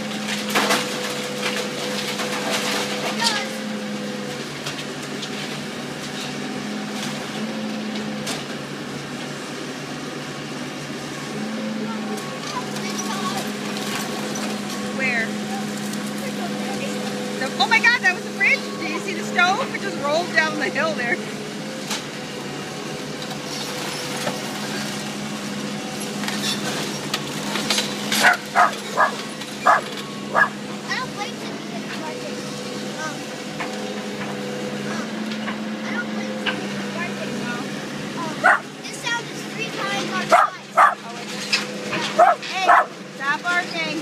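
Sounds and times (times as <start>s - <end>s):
wood and debris cracking: 0.0s - 3.5s
heavy machine engine running: 0.0s - 44.0s.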